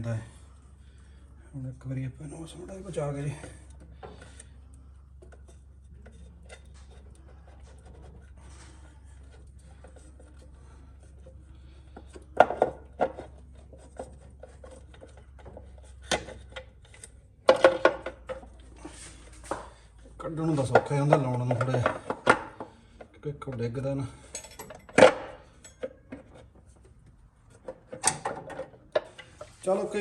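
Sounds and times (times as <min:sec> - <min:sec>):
clicks and scrapes of tools: 0:24.3 - 0:26.5.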